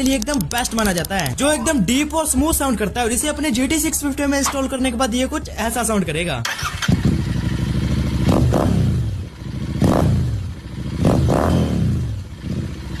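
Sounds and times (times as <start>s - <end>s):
motorcycle engine revving: 6.4s - 13.0s.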